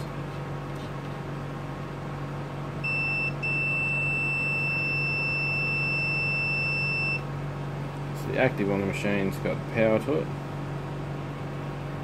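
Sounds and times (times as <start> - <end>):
multimeter continuity beep: 2.8 - 7.3.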